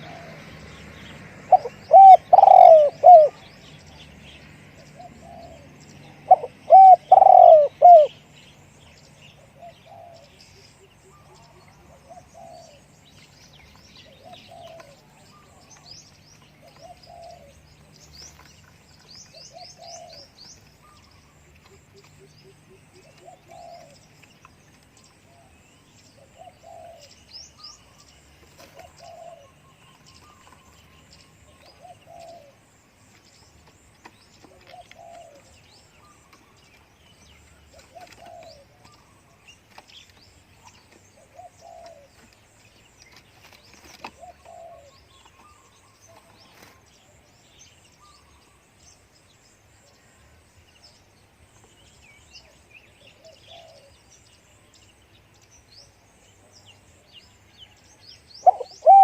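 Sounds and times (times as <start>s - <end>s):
dove cooing: 0.0s - 0.6s, 1.5s - 3.4s, 5.0s - 8.2s, 9.4s - 10.4s, 11.0s - 12.9s, 14.0s - 15.9s, 16.6s - 17.7s, 19.3s - 21.0s, 21.7s - 24.0s, 26.2s - 27.7s, 28.5s - 32.6s, 34.5s - 36.2s, 37.7s - 39.2s, 41.2s - 42.1s, 44.0s - 46.8s, 53.0s - 53.9s, 58.4s - 59.0s
small birds chirping: 0.0s - 59.0s.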